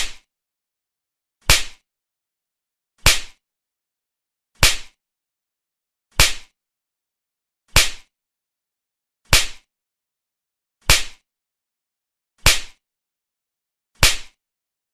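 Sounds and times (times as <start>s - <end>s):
sharp hand slap: 0.0s - 0.3s, 1.4s - 1.8s, 3.0s - 3.4s, 4.6s - 5.0s, 6.1s - 6.6s, 7.7s - 8.1s, 9.3s - 9.7s, 10.8s - 11.2s, 12.4s - 12.8s, 14.0s - 14.4s.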